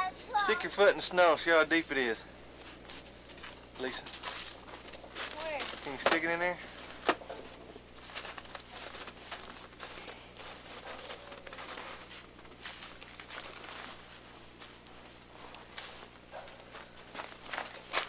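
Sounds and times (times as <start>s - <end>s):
low steady hum: 0.0s - 18.0s
footsteps crunching in snow: 2.6s - 6.0s, 7.9s - 18.0s.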